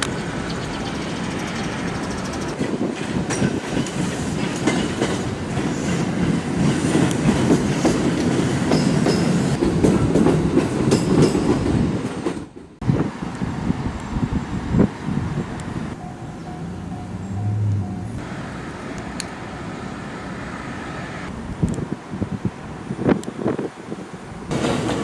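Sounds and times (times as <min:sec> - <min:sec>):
train wheels clacking on rail joints: 0:01.3 - 0:12.8, 0:24.5 - 0:25.0.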